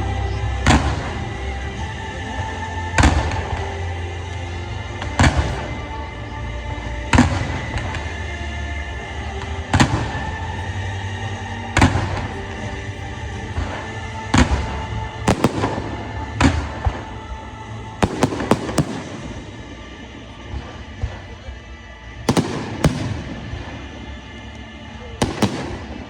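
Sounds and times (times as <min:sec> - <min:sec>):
music soundtrack: 0:00.0 - 0:26.0
fireworks banging: 0:11.8 - 0:17.2, 0:18.0 - 0:21.6, 0:22.2 - 0:24.6, 0:25.2 - 0:26.0.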